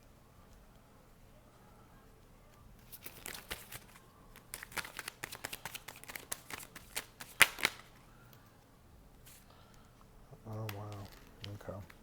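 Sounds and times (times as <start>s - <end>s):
cards being shuffled: 2.8s - 8.0s, 10.5s - 12.0s.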